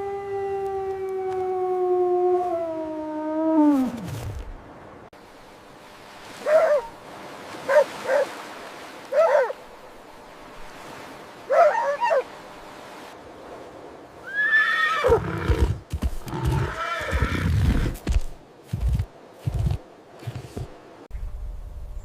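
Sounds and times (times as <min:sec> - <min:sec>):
dog yipping and barking: 0:06.4 - 0:07.0, 0:07.7 - 0:08.3, 0:09.1 - 0:09.6, 0:11.5 - 0:12.3.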